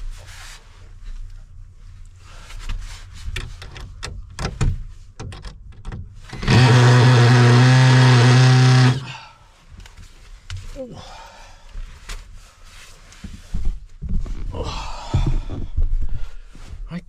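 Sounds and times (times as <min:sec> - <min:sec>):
handling knocks and clicks: 0:03.3 - 0:06.2
power drill running: 0:06.4 - 0:09.1.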